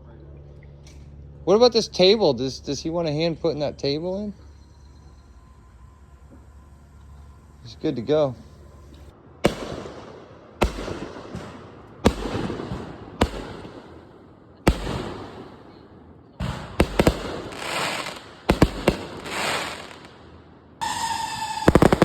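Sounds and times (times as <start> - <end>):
sharp echoing bangs: 9.2 - 22.0
crackling: 16.5 - 22.0.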